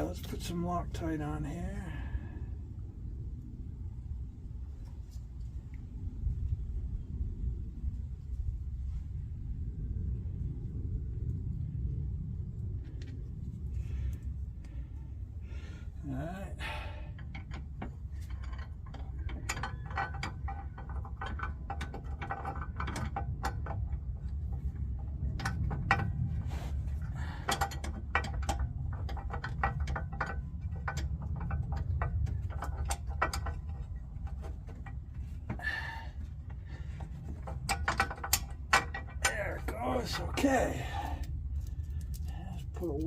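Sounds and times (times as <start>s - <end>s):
steady low rumble: 0.0s - 43.0s
metal clicks and scrapes: 17.0s - 43.0s.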